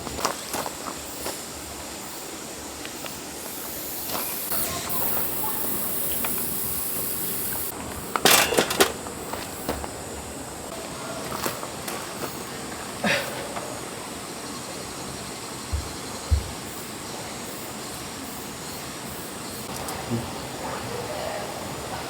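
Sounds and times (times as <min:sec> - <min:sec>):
steady high hiss: 0:00.0 - 0:22.0
clicks and knocks: 0:08.2 - 0:09.0.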